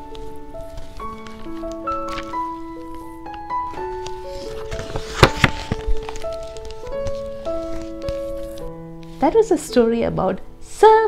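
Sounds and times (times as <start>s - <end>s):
background music melody: 0.0s - 11.0s.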